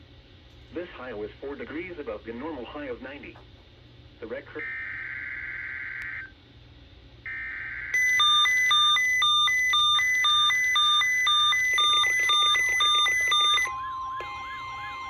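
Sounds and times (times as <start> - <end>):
steady warning alarm tone: 4.6 - 6.3, 7.3 - 15.0
high alternating electronic beeps: 7.9 - 15.0.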